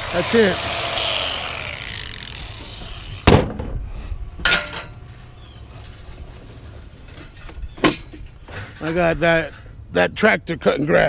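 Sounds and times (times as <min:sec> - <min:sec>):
scrap metal clanking: 0:04.4 - 0:09.8.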